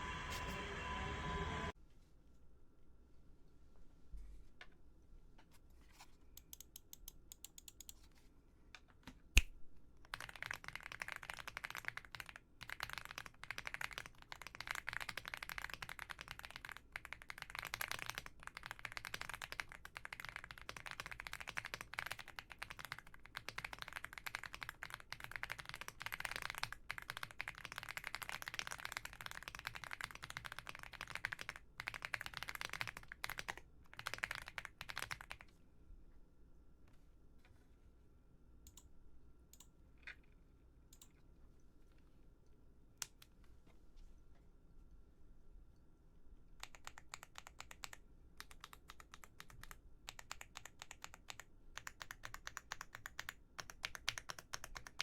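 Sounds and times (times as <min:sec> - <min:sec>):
fast mechanical keyboard typing: 0:10.1 - 0:35.5, 0:46.6 - 0:55.0.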